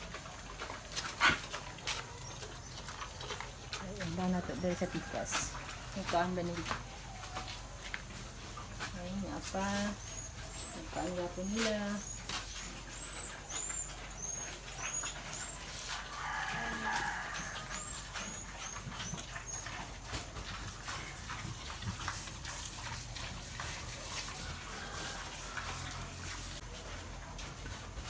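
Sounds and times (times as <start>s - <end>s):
small birds peeping: 0.0s - 22.2s.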